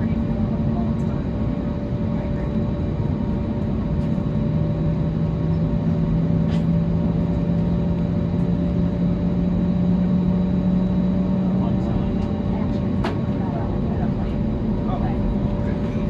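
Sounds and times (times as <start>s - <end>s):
airliner cabin engine drone: 0.0s - 16.0s.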